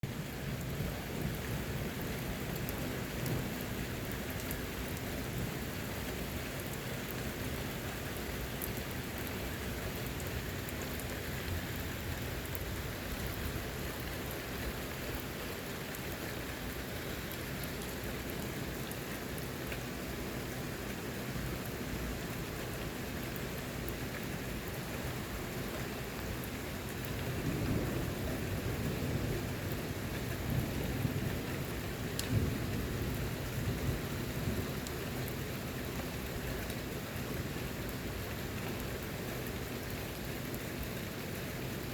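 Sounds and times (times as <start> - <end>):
steady rain falling: 0.0 - 41.9
low rumble of thunder: 26.9 - 36.5.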